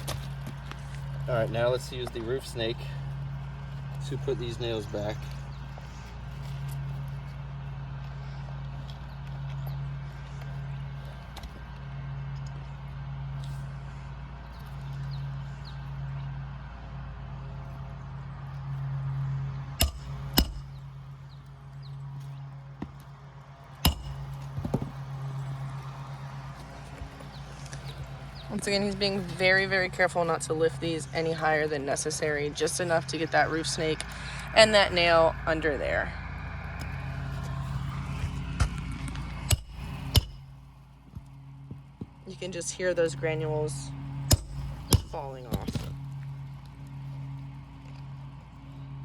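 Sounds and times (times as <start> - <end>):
shingles scraping and rustling: 0.0 - 7.4, 22.0 - 29.6
steady low hum: 0.0 - 49.0
hammer striking metal: 19.8 - 20.8, 23.8 - 24.9, 39.4 - 40.6, 44.3 - 45.8
small knocks: 23.8 - 25.1.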